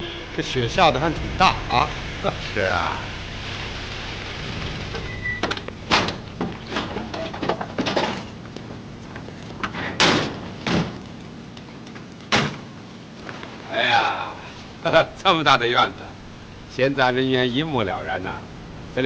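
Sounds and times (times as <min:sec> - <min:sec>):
doors slamming: 0:00.0 - 0:11.2, 0:12.3 - 0:12.7.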